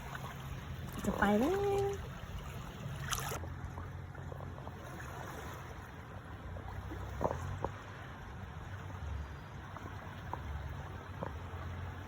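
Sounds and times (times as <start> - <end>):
boat engine hum: 0.0 - 12.0
water wash: 0.0 - 12.0.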